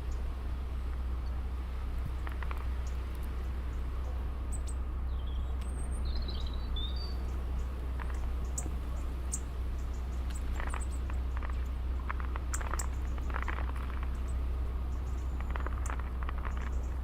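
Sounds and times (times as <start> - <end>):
low rumble: 0.0 - 17.0
small birds chirping: 0.0 - 17.0
sharp ticks: 7.6 - 14.3, 14.9 - 17.0.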